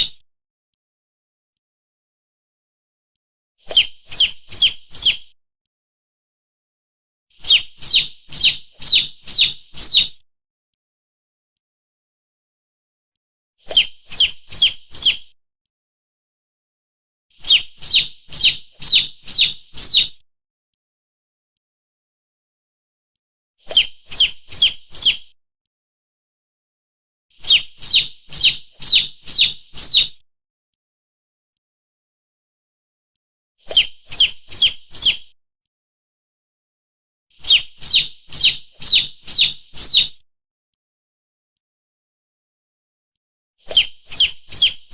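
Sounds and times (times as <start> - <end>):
shrill chirps of lure call: 3.7 - 5.3, 7.3 - 10.2, 13.7 - 15.4, 17.3 - 20.2, 23.7 - 25.4, 27.3 - 30.2, 33.6 - 35.4, 37.3 - 40.2, 43.6 - 44.9
high shrill lure call chirps: 43.7 - 44.9.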